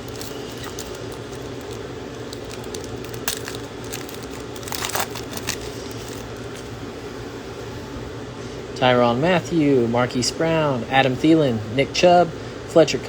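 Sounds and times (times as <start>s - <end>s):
card wrapper crinkling: 0.0s - 6.7s
room hum: 0.0s - 13.0s.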